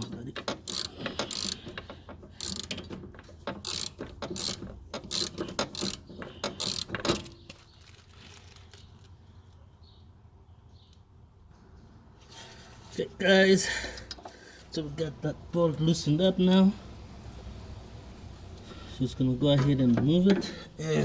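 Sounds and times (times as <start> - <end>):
wrench clicking on metal nut: 0.0 - 7.4.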